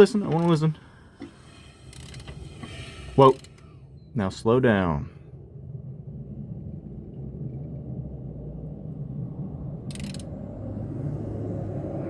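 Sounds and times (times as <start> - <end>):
short hiss: 1.2 - 3.6.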